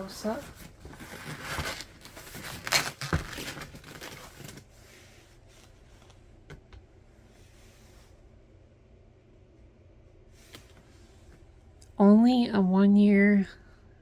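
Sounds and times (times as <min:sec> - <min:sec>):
cardboard packaging rustling: 0:00.1 - 0:04.8.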